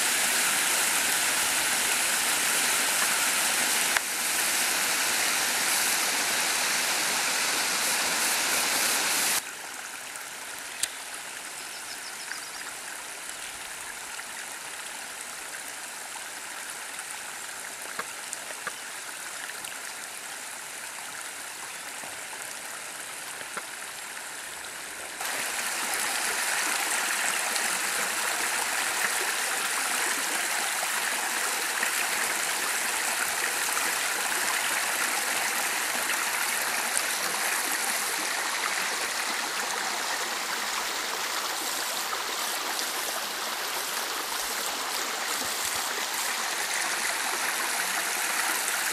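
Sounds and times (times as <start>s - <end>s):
stream water rushing: 0.0s - 11.4s, 22.8s - 48.9s
water splashes and drips: 0.0s - 11.7s, 12.3s - 48.9s.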